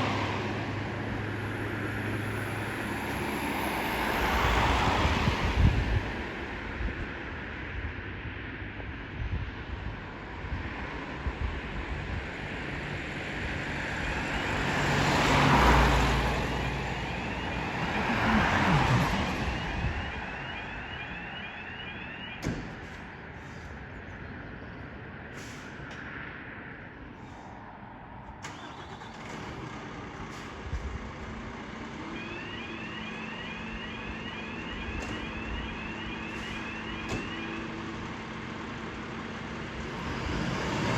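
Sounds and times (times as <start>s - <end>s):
heavy vehicles passing: 0.0s - 40.9s
fire engine siren yelping: 14.0s - 23.5s, 28.4s - 29.3s, 31.7s - 39.0s.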